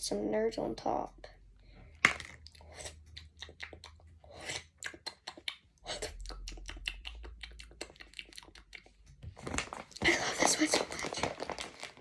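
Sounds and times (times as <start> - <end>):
candy rattling onto cereal: 9.6 - 12.0.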